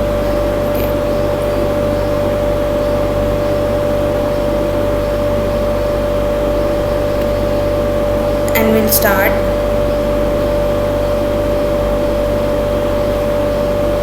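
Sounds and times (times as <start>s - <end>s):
steady machine hum: 0.0s - 14.0s.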